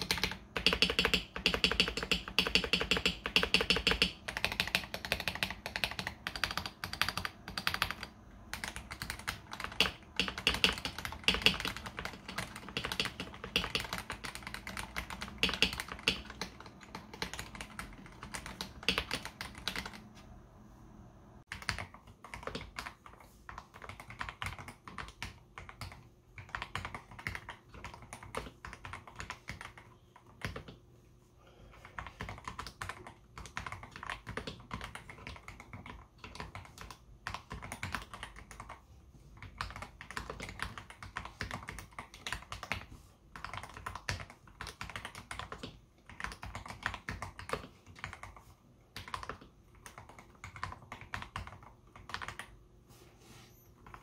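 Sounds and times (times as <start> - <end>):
fast typing on mechanical keyboard: 0.0 - 20.1, 21.4 - 30.8, 31.8 - 52.6.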